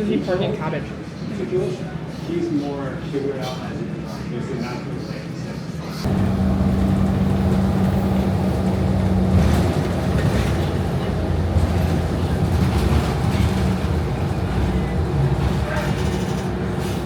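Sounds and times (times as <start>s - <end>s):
bus engine drone: 6.0s - 17.0s
road noise: 6.0s - 17.0s.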